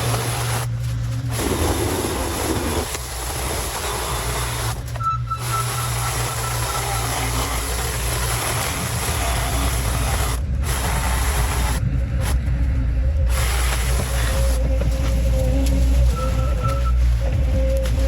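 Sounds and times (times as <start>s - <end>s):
engine running steadily: 0.0s - 18.0s
faint brief whistle: 16.1s - 17.0s.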